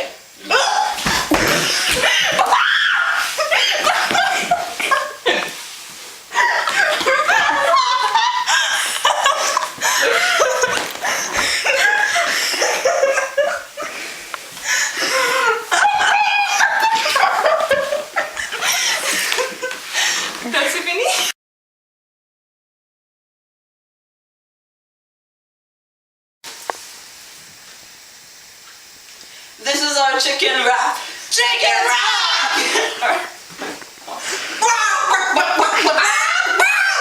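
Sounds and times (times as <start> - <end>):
group of people laughing: 0.5 - 5.6, 6.3 - 14.0, 15.0 - 19.9, 32.3 - 33.4, 34.3 - 37.0.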